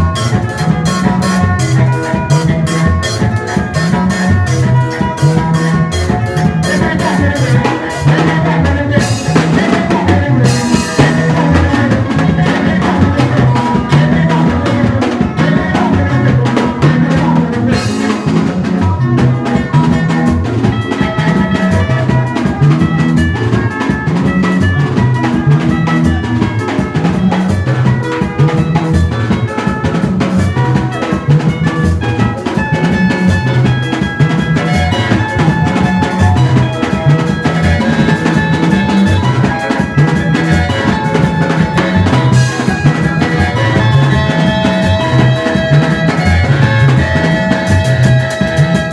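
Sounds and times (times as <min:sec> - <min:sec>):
instrumental music with drums and bass: 0:00.0 - 0:48.9.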